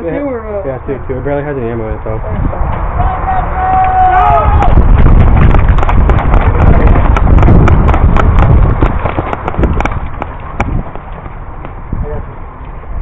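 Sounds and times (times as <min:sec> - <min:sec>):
wind rumble on microphone: 0:01.8 - 0:13.0
running footfalls: 0:03.7 - 0:11.9
microphone handling noise: 0:04.6 - 0:12.2
gear knocking: 0:04.7 - 0:11.8.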